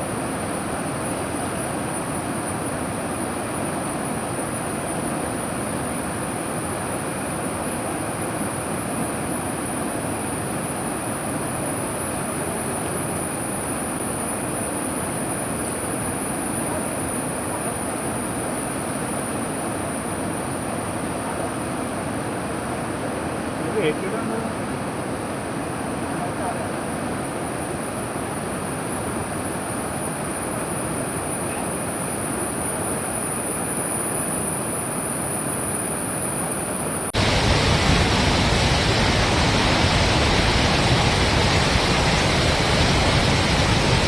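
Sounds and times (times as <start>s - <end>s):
river rushing in flood: 0.0s - 44.0s
high-pitched whine: 28.6s - 44.0s.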